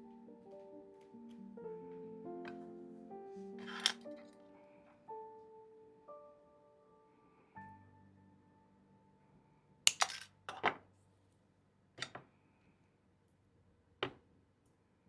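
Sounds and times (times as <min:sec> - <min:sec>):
piano note: 0:00.0 - 0:09.2
metallic clicks of pliers and wire: 0:09.9 - 0:10.3.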